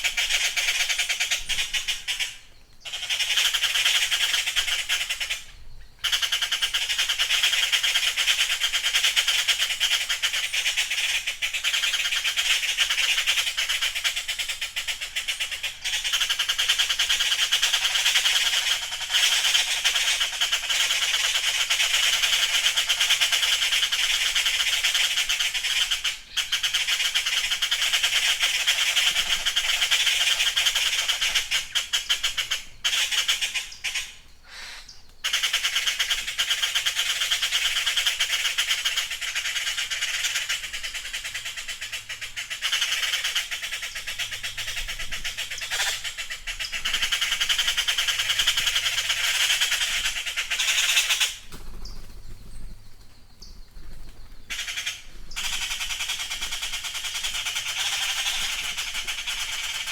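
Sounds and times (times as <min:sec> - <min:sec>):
blue jays calling harshly: 0:22.0 - 0:51.4, 0:54.5 - 0:59.9.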